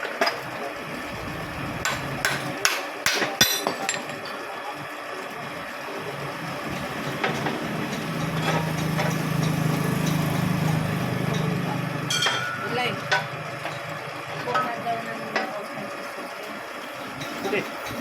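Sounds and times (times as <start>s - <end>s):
low engine-like hum: 0.8s - 2.6s, 5.2s - 15.3s.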